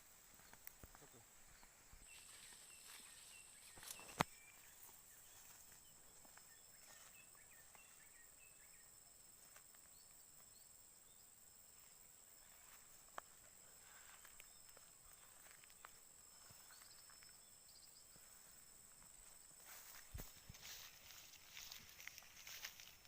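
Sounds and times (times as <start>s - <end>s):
faint bird chirps: 0.0s - 9.2s, 9.8s - 18.8s
insect drone: 0.0s - 23.0s.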